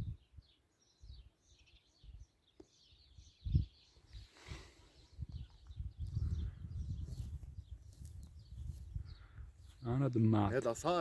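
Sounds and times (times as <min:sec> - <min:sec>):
wind rumbling on microphone: 0:00.0 - 0:01.3, 0:03.0 - 0:09.9
small birds chirping: 0:00.0 - 0:11.0.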